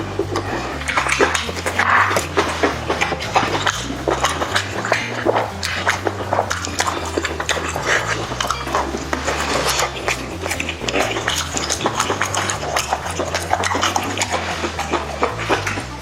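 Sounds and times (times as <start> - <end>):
chewing and lip-smacking: 0.0 - 16.0.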